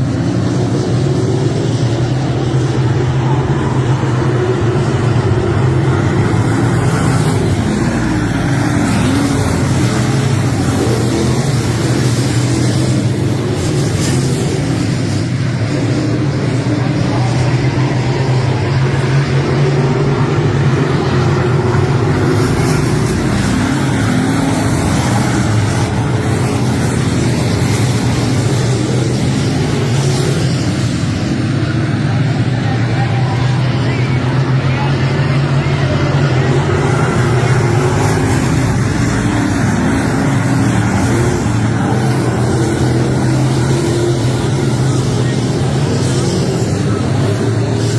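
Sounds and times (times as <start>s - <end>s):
race car engine running: 0.0s - 47.9s.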